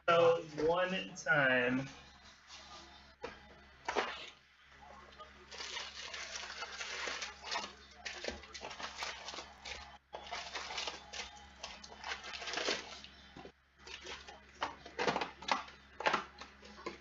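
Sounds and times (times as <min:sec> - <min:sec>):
wrappers crinkling and rustling: 0:05.5 - 0:15.6.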